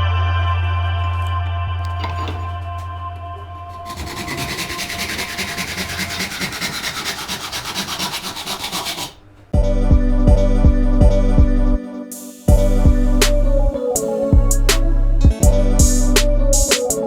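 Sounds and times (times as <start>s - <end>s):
hand sanding wood: 3.4s - 9.3s.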